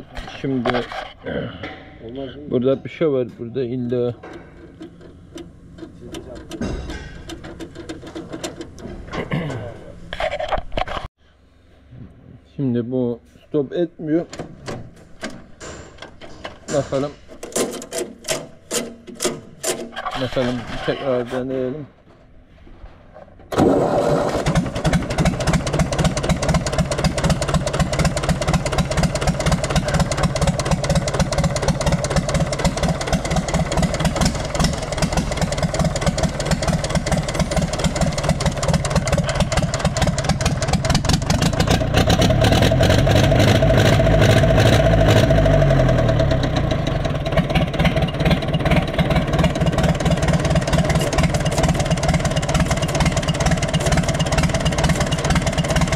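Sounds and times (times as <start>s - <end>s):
tractor diesel engine running: 2.6s - 10.2s, 23.9s - 55.9s.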